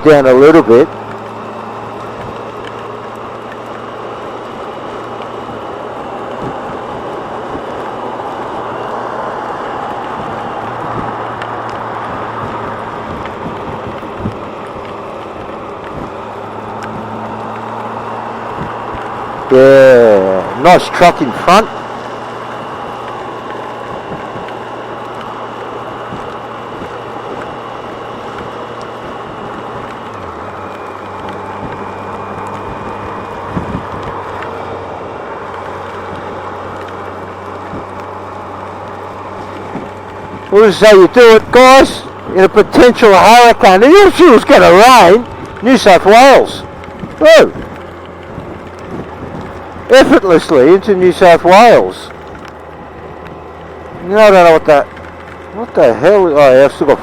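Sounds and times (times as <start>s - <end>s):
motorcycle engine hum: 0.0s - 57.0s
wind noise on microphone: 12.2s - 14.5s, 31.5s - 34.3s, 46.6s - 49.9s
wind and spray rushing over microphone: 31.4s - 35.2s.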